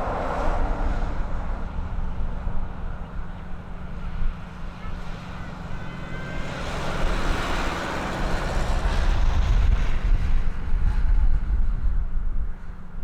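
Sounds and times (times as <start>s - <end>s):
wind rumble on microphone: 0.0s - 5.6s, 6.5s - 13.0s
aircraft engine rushing: 0.0s - 13.0s.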